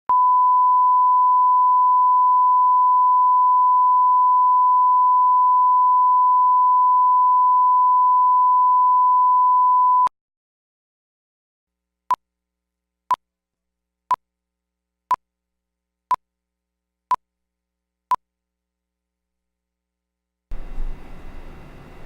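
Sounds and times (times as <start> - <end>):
sine-wave test tone: 0.1 - 10.1.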